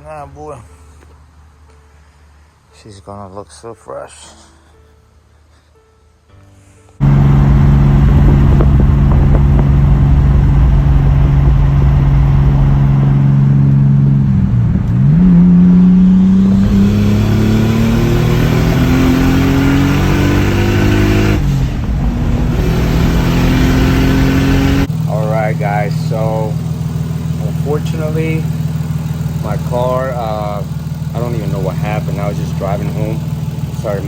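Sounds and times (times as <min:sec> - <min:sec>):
car engine accelerating: 0:07.0 - 0:34.0.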